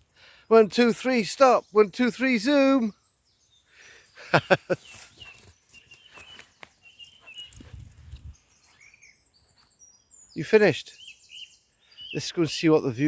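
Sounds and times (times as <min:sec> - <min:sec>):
faint bird chirps: 0:02.8 - 0:13.0.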